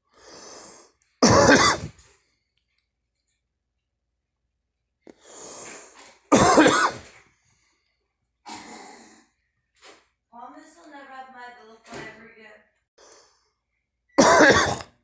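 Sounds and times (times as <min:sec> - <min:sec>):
girl coughing: 0:01.2 - 0:01.9, 0:06.3 - 0:07.0, 0:14.2 - 0:14.9.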